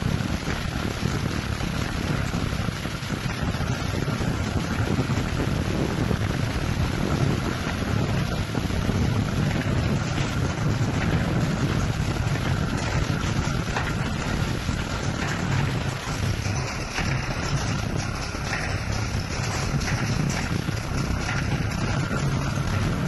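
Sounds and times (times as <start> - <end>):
machine humming and whirring: 0.0 - 23.0.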